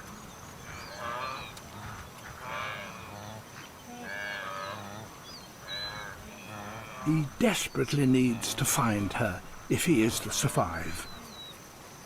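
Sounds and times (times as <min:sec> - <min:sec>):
faint bird chirping: 0:00.0 - 0:11.9
wildebeest moo-like calls: 0:00.6 - 0:07.3.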